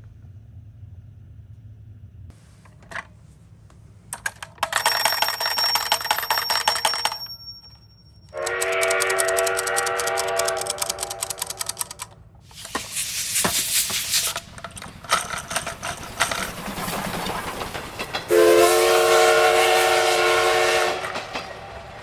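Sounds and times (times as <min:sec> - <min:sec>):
toy motor rattling: 0:04.2 - 0:07.4, 0:08.3 - 0:16.9.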